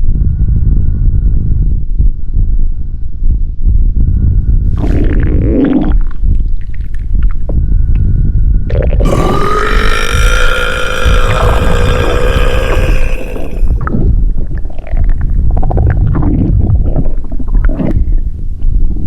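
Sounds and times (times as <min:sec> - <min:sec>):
stomach gurgling: 0:04.6 - 0:19.0
long burp: 0:08.7 - 0:13.9.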